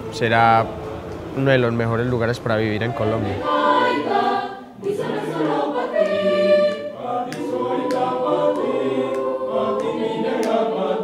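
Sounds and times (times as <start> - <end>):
choir singing long notes: 2.4 - 11.0.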